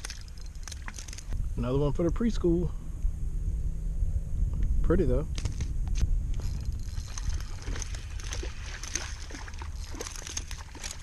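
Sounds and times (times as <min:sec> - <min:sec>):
water splashing and sloshing: 0:00.0 - 0:01.4, 0:06.3 - 0:11.0.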